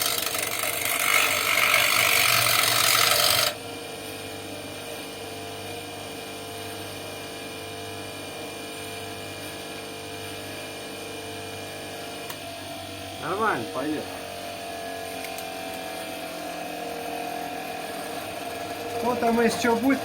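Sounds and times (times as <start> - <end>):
power grinder rasping on metal: 0.0 - 3.6, 13.2 - 20.0.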